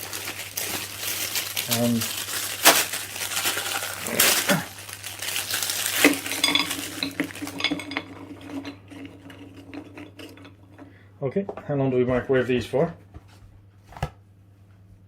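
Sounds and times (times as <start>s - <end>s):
low steady hum: 0.0s - 15.0s
plate and cutlery clinking: 6.3s - 10.6s.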